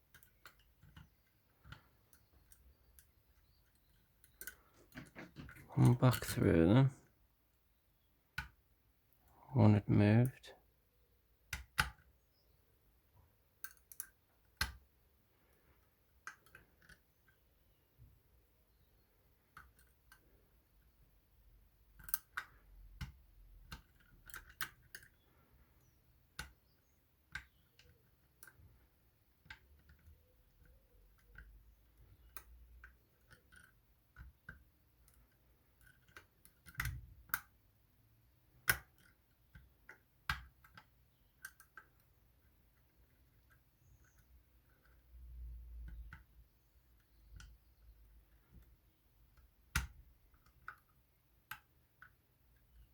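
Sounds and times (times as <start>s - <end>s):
lock pick clicking in lock: 21.9s - 25.2s, 29.4s - 37.5s, 38.5s - 42.2s.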